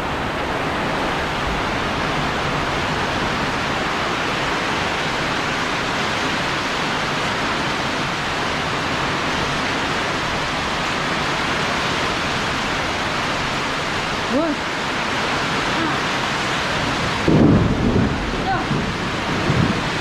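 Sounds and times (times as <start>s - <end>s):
heavy rain pouring: 0.0s - 20.0s.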